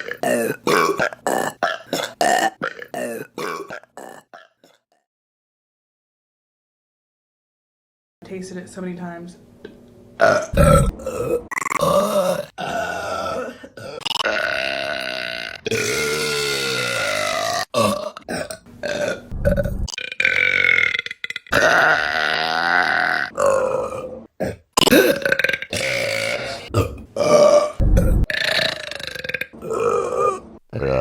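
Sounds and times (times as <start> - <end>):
women burping: 10.2 - 31.0.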